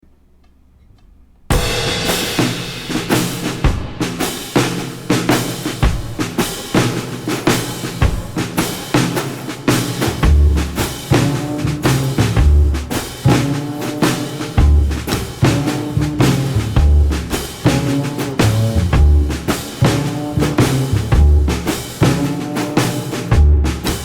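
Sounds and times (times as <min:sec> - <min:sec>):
music with drum beat: 0:01.5 - 0:24.0.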